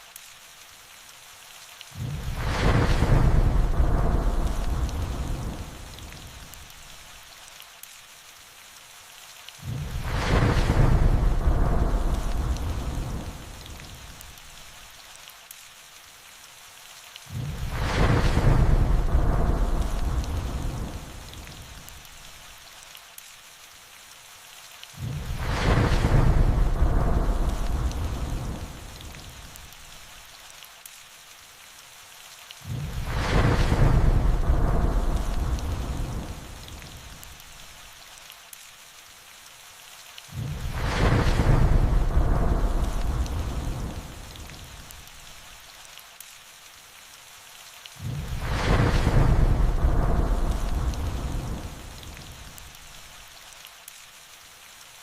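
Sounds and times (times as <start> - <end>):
steady rain: 0.0 - 55.0
thunderclap: 2.0 - 6.5, 9.6 - 14.1, 17.3 - 21.9, 25.0 - 29.6, 32.7 - 37.4, 40.4 - 45.1, 48.0 - 52.7
thunder rumbling: 2.0 - 6.6, 9.6 - 14.3, 17.3 - 22.0, 25.0 - 29.8, 32.7 - 37.5, 40.4 - 45.2, 48.0 - 52.9.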